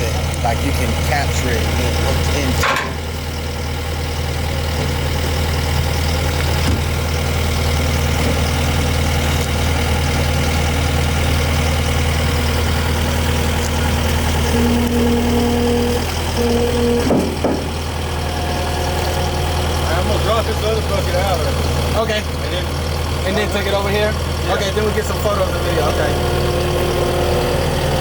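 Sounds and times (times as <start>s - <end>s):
engine idling: 0.0s - 28.0s
higher-pitched whine: 13.0s - 21.4s.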